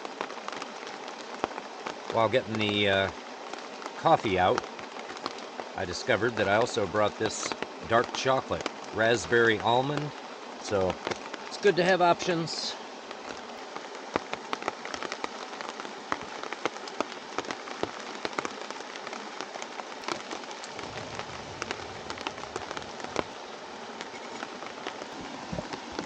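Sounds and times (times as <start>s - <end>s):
rain drops hitting a tarp: 0.0s - 26.0s
deep rushing water: 3.9s - 5.0s, 5.6s - 12.9s, 15.1s - 26.0s.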